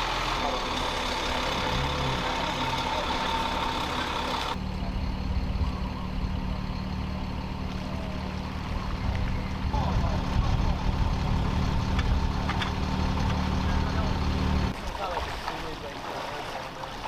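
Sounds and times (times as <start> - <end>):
vehicle engine running: 0.0 - 14.8.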